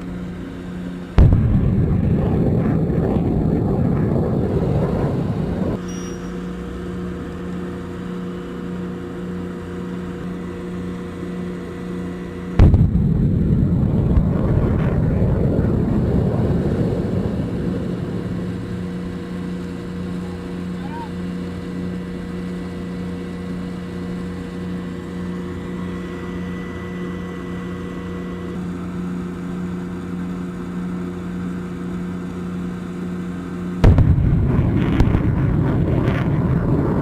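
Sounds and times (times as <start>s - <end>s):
rumbling roar of rocket motor: 0.0s - 37.0s
steady hum: 0.0s - 37.0s
rocket launch blast: 1.2s - 5.8s, 12.6s - 19.0s, 33.8s - 37.0s.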